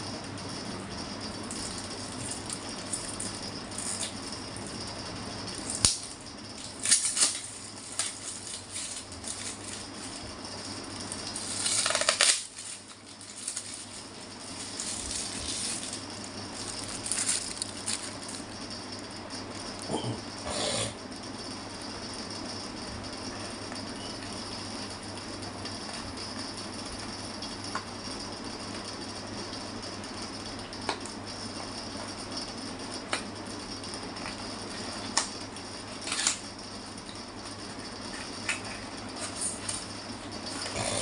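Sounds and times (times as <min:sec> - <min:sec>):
rattling and clicking handling: 0:05.5 - 0:18.6.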